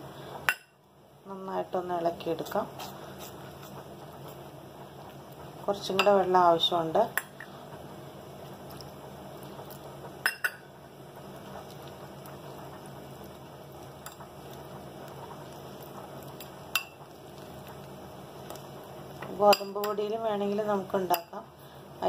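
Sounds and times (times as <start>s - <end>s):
spoon clinking against bowl: 10.2s - 10.6s.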